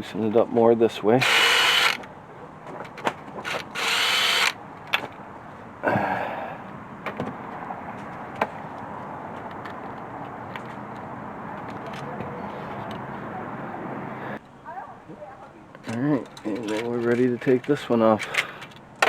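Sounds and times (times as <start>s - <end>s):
rasping tool burst: 1.2s - 2.1s, 3.4s - 4.6s.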